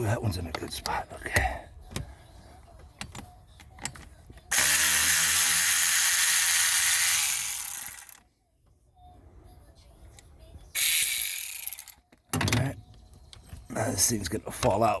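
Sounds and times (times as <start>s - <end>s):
socket ratchet clicking: 4.5s - 8.2s, 10.8s - 12.0s.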